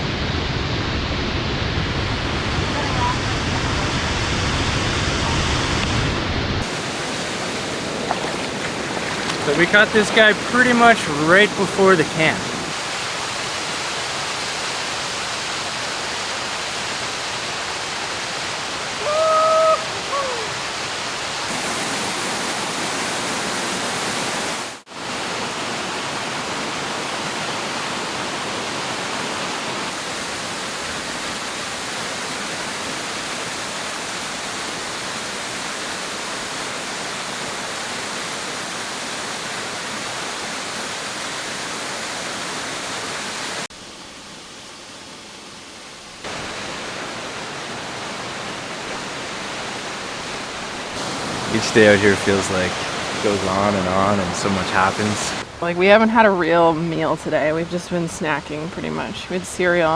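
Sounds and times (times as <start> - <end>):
short call with falling end: 6.6 - 12.8
water rushing: 6.6 - 59.9.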